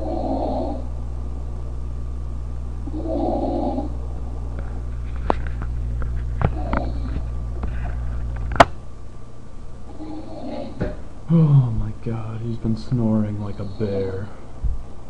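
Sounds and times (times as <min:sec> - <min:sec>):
man snoring: 0:00.0 - 0:00.8, 0:02.8 - 0:03.9, 0:09.9 - 0:14.3
steady low hum: 0:00.0 - 0:15.0.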